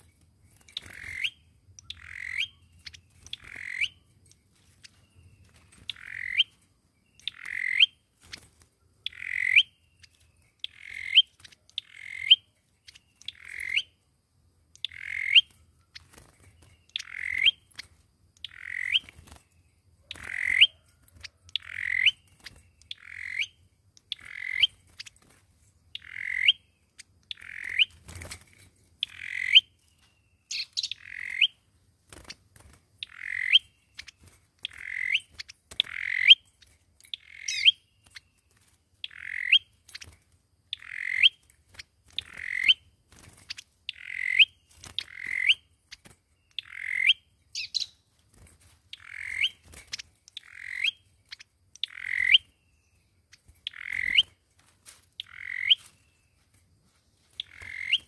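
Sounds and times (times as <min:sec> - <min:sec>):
bird calling: 0:00.6 - 0:04.1, 0:04.8 - 0:06.6, 0:07.2 - 0:08.4, 0:09.0 - 0:14.0, 0:14.8 - 0:19.4, 0:20.1 - 0:25.2, 0:26.0 - 0:28.1, 0:29.0 - 0:29.8, 0:30.4 - 0:31.6, 0:33.0 - 0:36.5, 0:37.1 - 0:37.8, 0:39.0 - 0:40.1, 0:40.7 - 0:41.4, 0:42.1 - 0:42.9, 0:43.5 - 0:45.7, 0:46.5 - 0:48.0, 0:48.9 - 0:52.8, 0:53.4 - 0:54.4, 0:55.2 - 0:56.2, 0:57.3 - 0:58.0.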